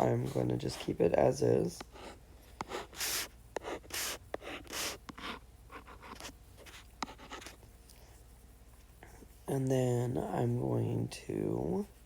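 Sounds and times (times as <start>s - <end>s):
pen scratching on paper: 1.8s - 7.6s.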